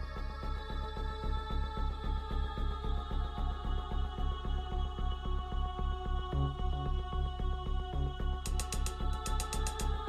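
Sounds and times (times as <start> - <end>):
electronic music with pulsing beat: 8.4 - 10.0.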